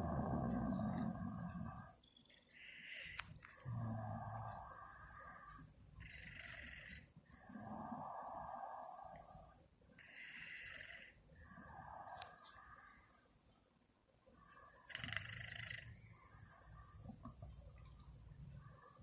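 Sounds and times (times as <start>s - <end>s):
woman snoring: 0.0s - 2.0s, 3.6s - 13.2s.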